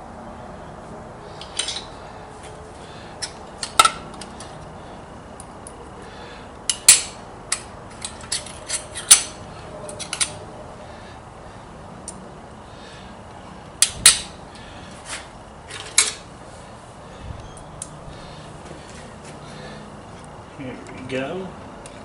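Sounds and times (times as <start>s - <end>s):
metal tools clinking: 1.4s - 1.9s, 6.7s - 10.4s.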